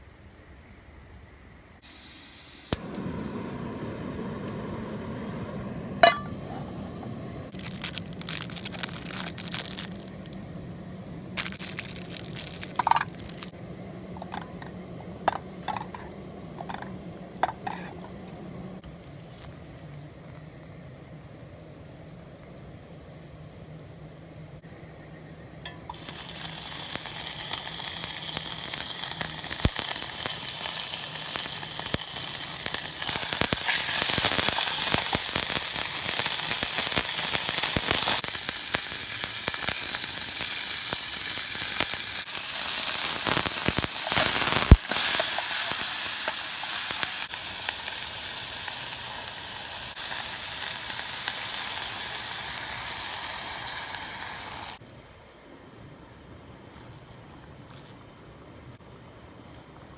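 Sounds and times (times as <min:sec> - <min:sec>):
beef sizzling in a pan: 0:01.8 - 0:10.4, 0:25.9 - 0:54.8.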